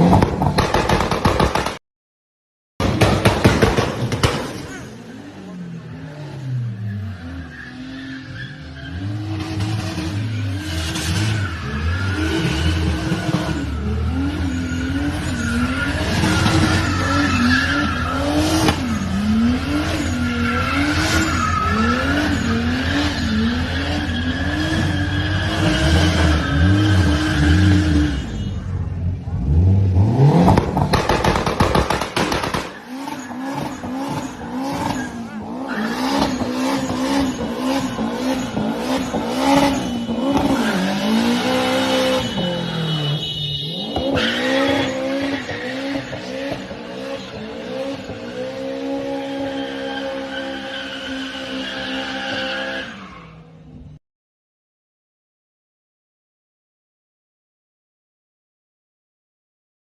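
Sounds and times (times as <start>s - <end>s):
car engine revving: 28.9s - 43.0s.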